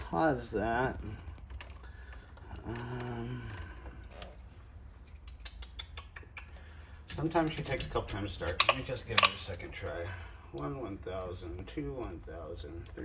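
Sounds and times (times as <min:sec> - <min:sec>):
keys jangling: 0:03.8 - 0:09.4
small metallic clicks: 0:03.9 - 0:09.7.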